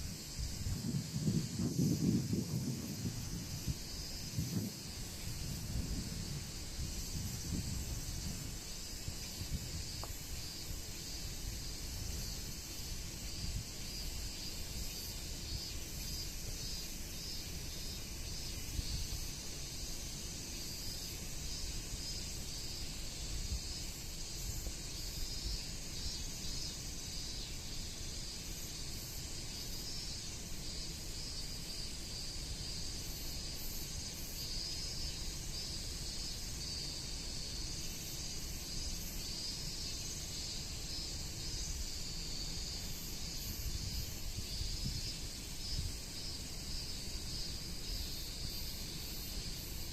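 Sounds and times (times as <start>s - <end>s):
wind buffeting microphone: 0.0s - 10.0s
insects hissing: 0.0s - 49.9s.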